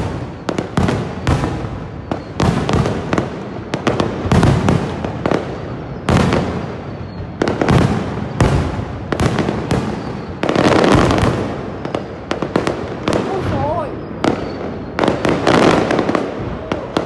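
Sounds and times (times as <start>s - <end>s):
fireworks bursting with echo: 0.0s - 17.0s.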